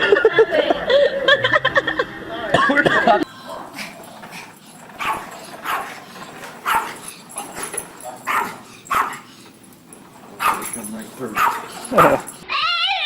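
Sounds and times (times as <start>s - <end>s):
dog barking and yipping: 3.2s - 12.4s.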